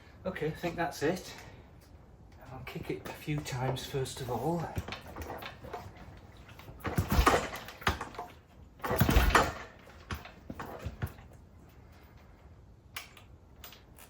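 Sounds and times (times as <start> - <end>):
motorcycle engine kick-started: 6.8 - 11.2.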